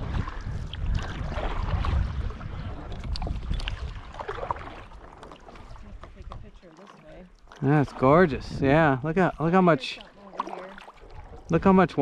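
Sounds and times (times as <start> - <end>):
wind rumble on microphone: 0.0 - 6.7, 7.8 - 9.6
paddle splashing in water: 0.0 - 8.6, 9.2 - 12.0.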